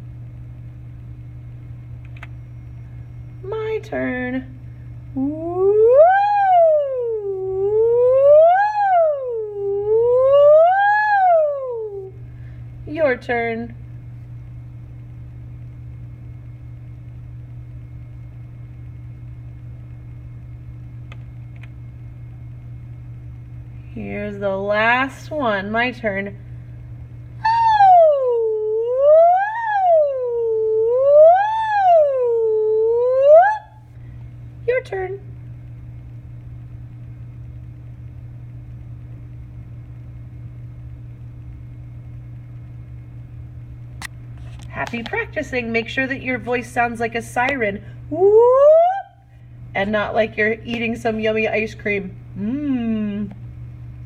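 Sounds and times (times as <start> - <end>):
low background hum: 0.0 - 54.0
faint clicks: 2.0 - 2.4.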